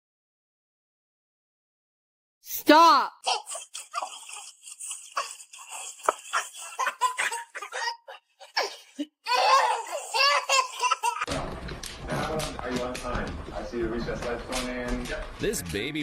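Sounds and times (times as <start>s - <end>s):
person laughing: 3.3s - 9.1s.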